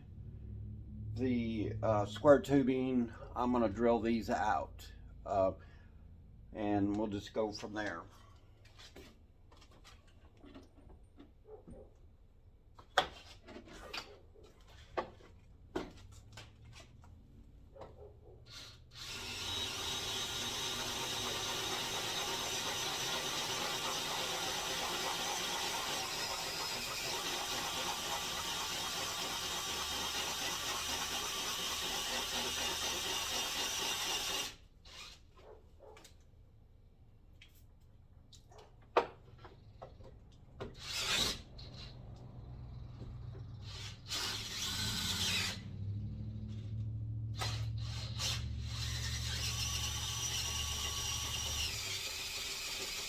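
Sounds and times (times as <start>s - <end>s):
power drill running: 18.5s - 35.2s, 40.7s - 42.0s, 43.5s - 45.6s, 47.3s - 53.0s.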